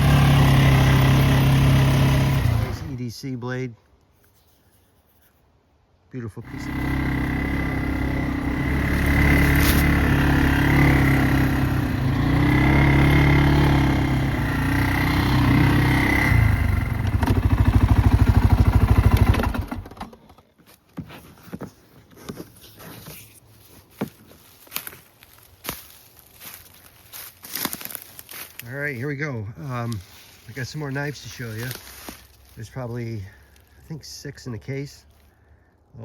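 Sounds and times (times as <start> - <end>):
small vehicle engine running: 0.0 - 3.0, 6.4 - 20.3
steps on leaf litter: 8.6 - 12.2, 22.2 - 33.8.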